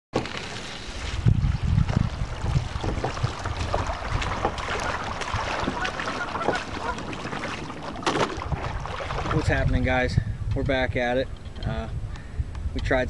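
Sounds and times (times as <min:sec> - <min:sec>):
water lapping around kayak: 0:00.2 - 0:10.0
wind gusting on microphone: 0:00.7 - 0:13.0.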